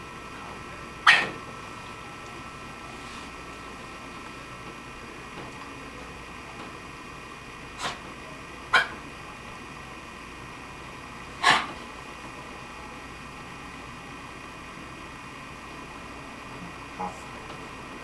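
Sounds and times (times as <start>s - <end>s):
dog coughing: 1.0s - 1.4s, 7.8s - 8.1s, 8.7s - 9.0s, 11.4s - 11.9s.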